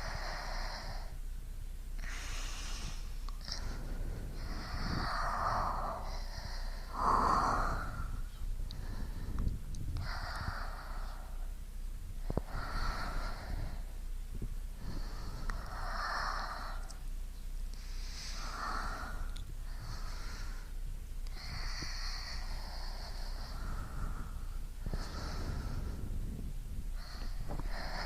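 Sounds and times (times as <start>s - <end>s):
person breathing slowly: 0.0s - 1.3s, 2.0s - 28.0s.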